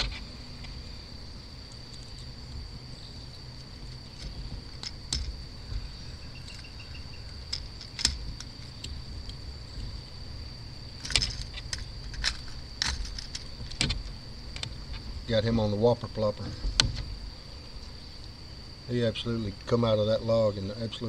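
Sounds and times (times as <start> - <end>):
insect calling high-pitched: 0.0 - 21.0
light clicks and rattles: 3.6 - 10.0, 10.9 - 15.1.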